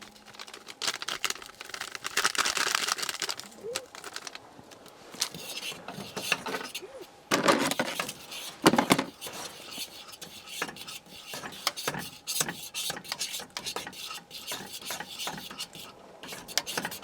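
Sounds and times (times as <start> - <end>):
utensil scraping food in a pan: 5.2 - 17.0.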